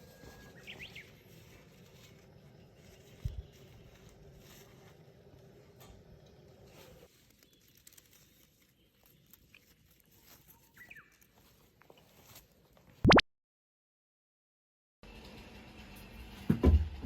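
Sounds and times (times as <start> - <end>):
faint chirp: 0.0 - 4.1.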